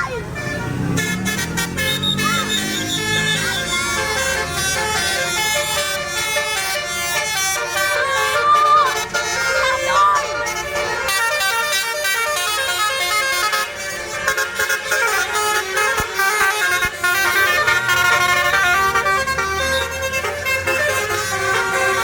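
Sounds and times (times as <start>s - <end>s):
bus engine rumble: 0.0s - 22.0s
melodic air horns playing tune: 0.2s - 22.0s.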